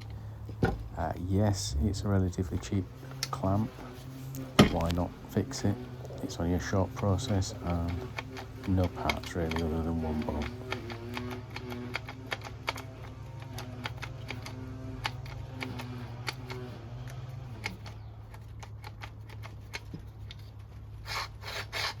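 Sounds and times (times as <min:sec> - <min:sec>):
low drone: 0:00.0 - 0:11.7
sharp clicks: 0:01.8 - 0:22.0.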